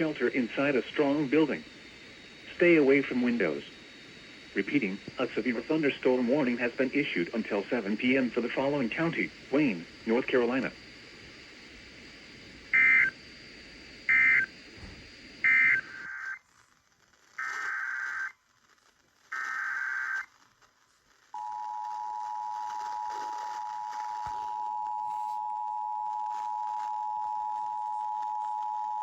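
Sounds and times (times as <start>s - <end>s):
data bursts: 0.0s - 14.6s, 15.3s - 16.4s, 19.4s - 20.3s.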